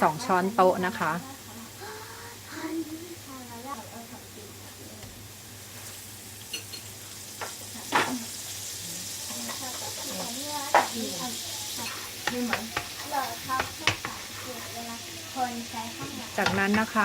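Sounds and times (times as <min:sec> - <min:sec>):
mushrooms sizzling in a frying pan: 0:00.0 - 0:17.0
utensil scraping a pan: 0:11.6 - 0:15.0.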